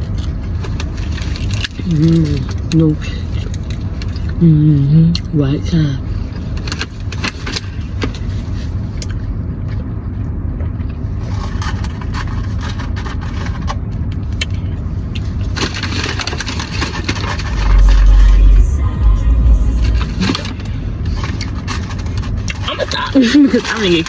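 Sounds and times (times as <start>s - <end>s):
crunching while eating: 0.0s - 4.4s
car cabin rumble: 17.4s - 21.6s.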